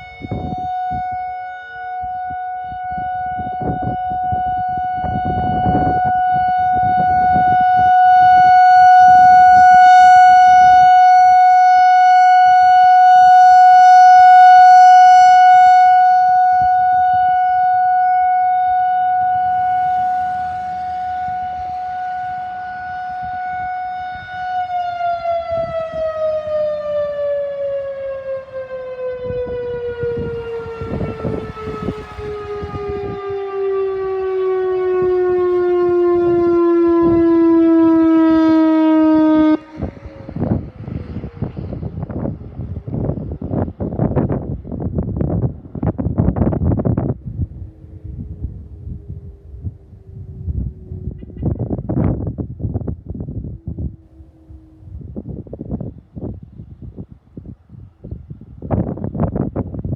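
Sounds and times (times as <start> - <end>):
electronic warning siren: 0.0 - 57.1
low rumbles: 16.4 - 26.5, 39.5 - 59.9.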